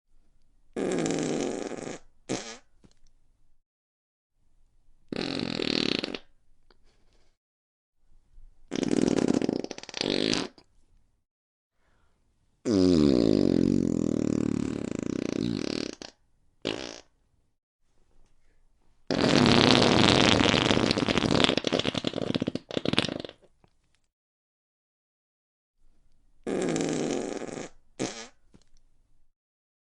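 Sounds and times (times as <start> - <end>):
farts: 0.8 - 2.7, 5.1 - 6.3, 8.7 - 10.7, 12.6 - 17.2, 19.1 - 23.5, 26.5 - 28.4.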